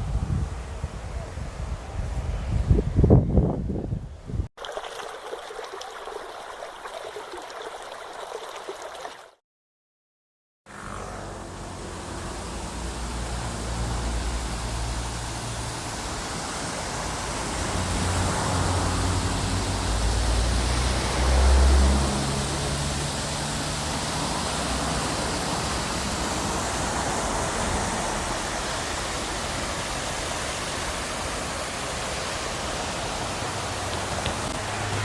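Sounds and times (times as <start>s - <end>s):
stream water rushing: 4.6s - 9.4s, 11.8s - 35.0s.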